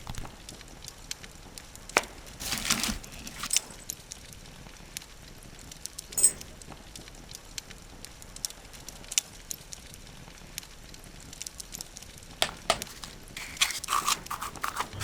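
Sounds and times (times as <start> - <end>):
packaging crinkling and rustling: 2.0 - 3.8, 12.5 - 15.0.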